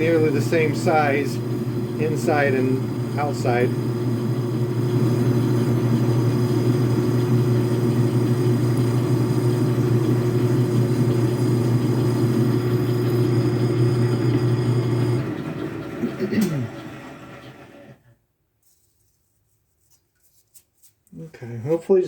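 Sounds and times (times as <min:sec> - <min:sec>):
metal lathe humming: 0:00.0 - 0:18.0.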